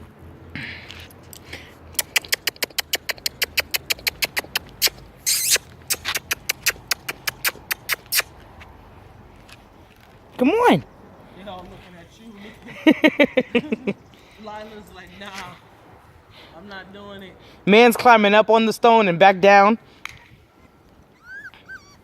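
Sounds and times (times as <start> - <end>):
rapid sharp clicks: 2.0 - 8.3.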